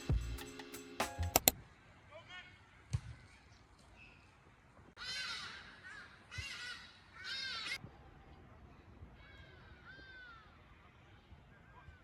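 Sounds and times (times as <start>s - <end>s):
bird cawing: 5.0s - 7.8s.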